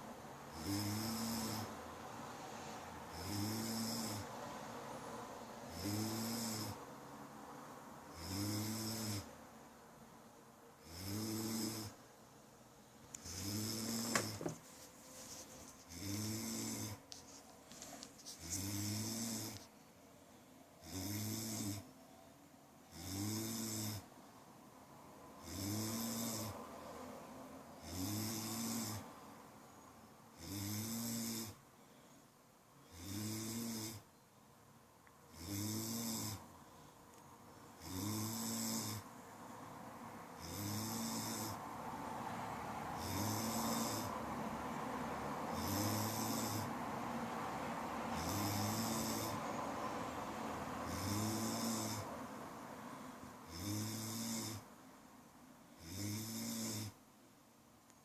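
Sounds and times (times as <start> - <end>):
person snoring: 0.0 - 1.8, 2.6 - 4.3, 5.7 - 6.8, 8.1 - 9.3, 10.8 - 12.0, 13.2 - 14.6, 15.9 - 17.0, 18.4 - 19.6, 20.8 - 21.9, 22.9 - 24.1, 25.4 - 26.6, 27.8 - 29.1, 30.3 - 31.6, 32.9 - 34.1, 35.3 - 36.5, 37.8 - 39.1, 40.4 - 41.6, 43.0 - 44.2, 45.5 - 46.8, 48.1 - 49.6, 50.8 - 52.1, 53.4 - 54.7, 55.8 - 57.0
steady background hiss: 0.0 - 58.0.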